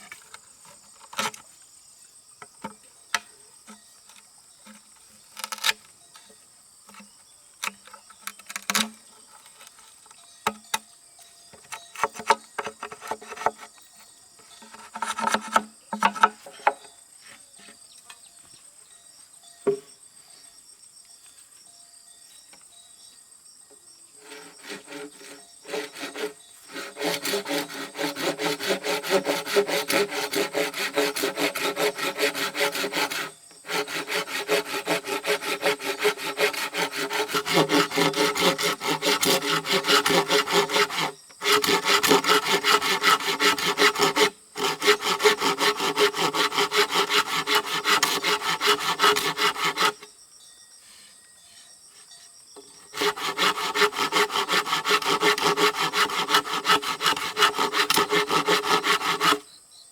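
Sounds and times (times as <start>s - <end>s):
hand saw rasping through wood: 5.3s - 5.8s, 14.7s - 16.8s, 24.2s - 50.0s, 52.9s - 59.5s.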